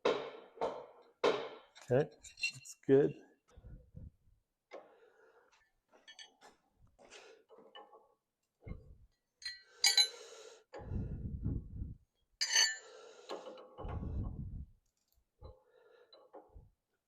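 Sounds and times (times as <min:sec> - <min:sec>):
wrenches clinking on nut: 0:12.4 - 0:12.9.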